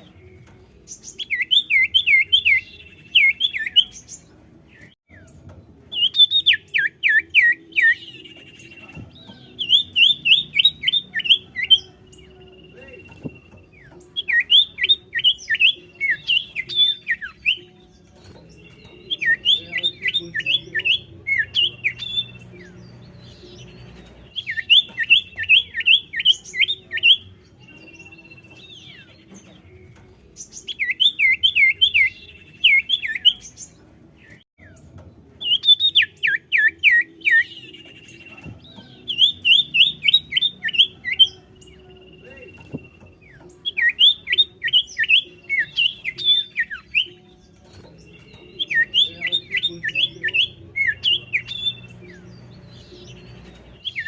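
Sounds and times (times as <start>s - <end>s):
bird singing down-slurred phrases: 6.0s - 29.3s, 35.6s - 54.0s.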